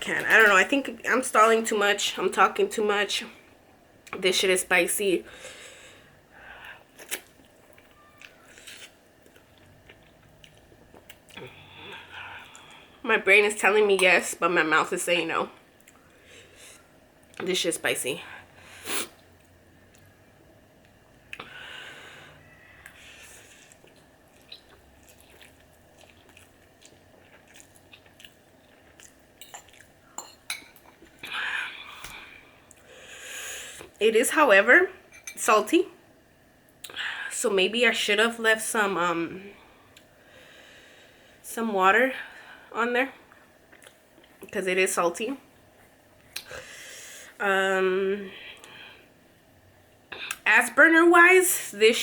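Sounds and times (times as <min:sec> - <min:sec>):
person chewing noodles: 0:07.0 - 0:12.9, 0:22.3 - 0:30.2.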